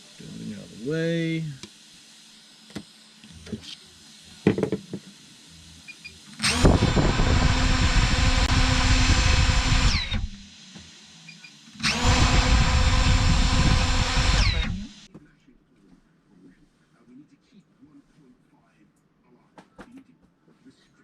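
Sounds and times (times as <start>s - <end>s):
drone motors whining: 5.9s - 10.5s, 11.3s - 15.1s.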